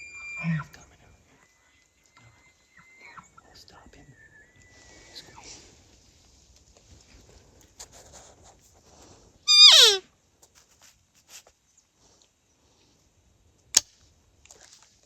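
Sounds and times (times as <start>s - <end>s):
elk mew call: 9.5s - 10.0s.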